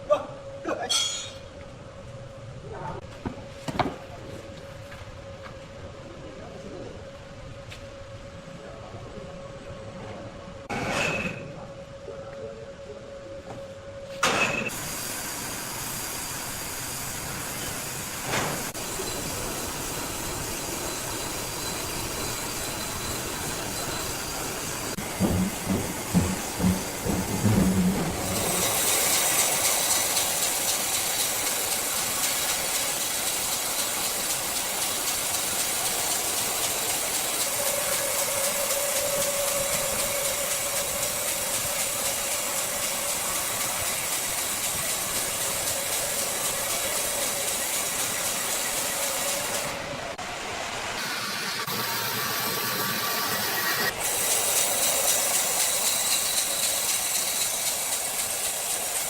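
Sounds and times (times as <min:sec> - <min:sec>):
sawmill machinery cutting wood: 0:14.2 - 0:59.0.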